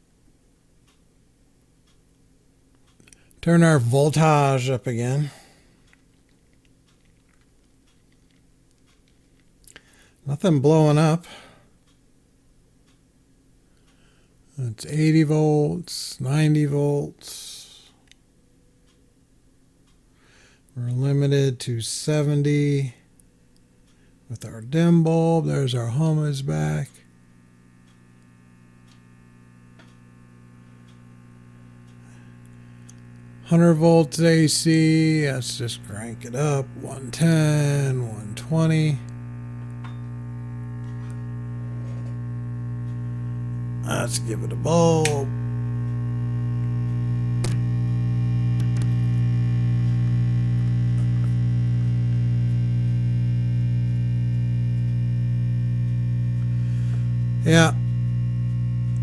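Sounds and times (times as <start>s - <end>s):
radio speaker mains hum: 0.0s - 59.0s
faint clicks: 26.8s - 59.0s.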